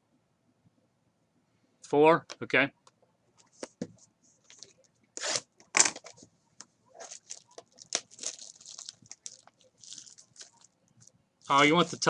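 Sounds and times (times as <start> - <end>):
packaging ripping: 5.2 - 6.1, 7.0 - 10.7, 11.5 - 12.0
wrapper and cardboard crinkling: 6.9 - 12.0.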